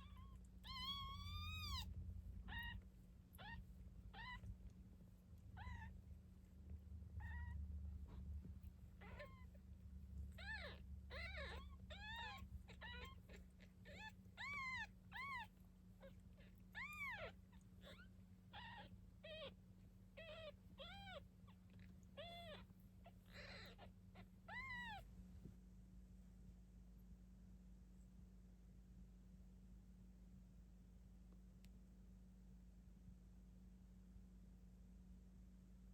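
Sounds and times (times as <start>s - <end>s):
kittens mewing: 0.0s - 4.5s, 7.2s - 8.2s, 9.0s - 9.6s, 10.3s - 19.5s, 20.2s - 25.0s.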